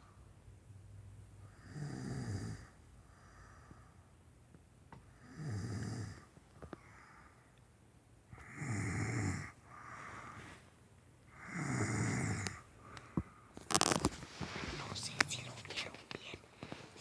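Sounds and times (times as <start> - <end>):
soft breaths: 1.4 - 4.3, 5.0 - 7.7, 8.4 - 17.0
man snoring: 1.5 - 2.8, 5.2 - 6.3, 8.4 - 9.6, 11.3 - 12.6.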